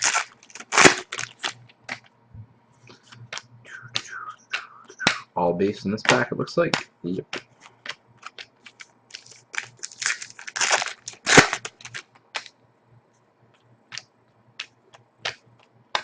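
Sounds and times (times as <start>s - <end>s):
cards and packaging rustling: 0.0s - 2.1s, 7.3s - 12.5s
packaging crinkling: 0.0s - 2.1s, 7.6s - 12.5s
sharp snap: 3.3s - 5.3s.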